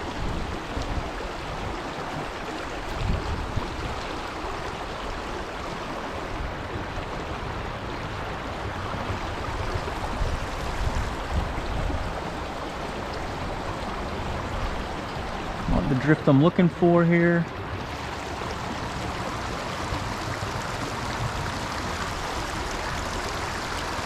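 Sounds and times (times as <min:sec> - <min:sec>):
stream flowing over rocks: 0:00.0 - 0:24.0.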